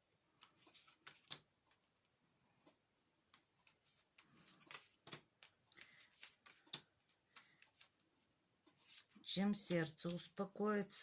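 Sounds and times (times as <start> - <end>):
soft clicks of cards: 0.4 - 10.2
paper swishes of cards: 3.6 - 6.8.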